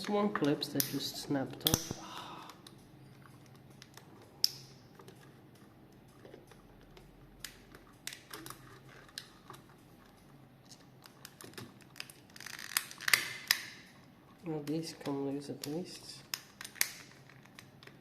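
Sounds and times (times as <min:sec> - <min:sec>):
plastic clicks and snaps: 0:00.0 - 0:02.8, 0:03.4 - 0:05.3, 0:10.7 - 0:13.9, 0:14.6 - 0:18.0.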